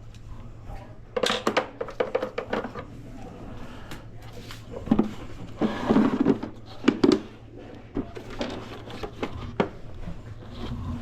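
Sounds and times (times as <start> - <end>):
plastic parts knocking and clunking: 1.2 - 2.9, 4.8 - 9.8.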